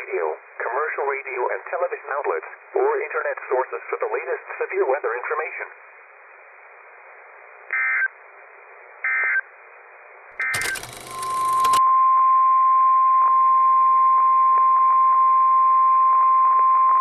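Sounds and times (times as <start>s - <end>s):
crackling noise: 10.4s - 11.8s
faint radio static clicks: 10.4s - 11.8s
steady warning alarm tone: 10.4s - 11.8s.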